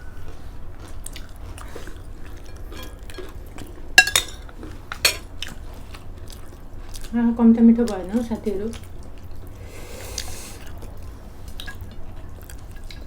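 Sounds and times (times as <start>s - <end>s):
chewing: 0.0s - 13.0s
cutlery clinking on plates: 4.0s - 5.3s.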